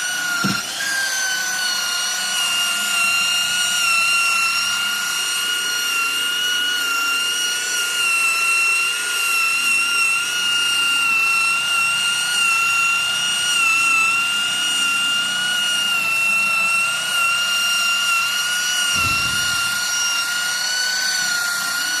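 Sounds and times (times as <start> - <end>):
electric sander whining: 0.0 - 22.0
low thud: 19.0 - 20.0.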